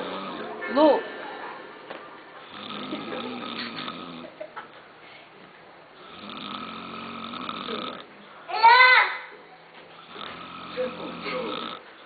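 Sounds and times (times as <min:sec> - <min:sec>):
man snoring: 0:00.0 - 0:00.5, 0:02.4 - 0:04.3, 0:06.0 - 0:08.1, 0:10.0 - 0:11.8.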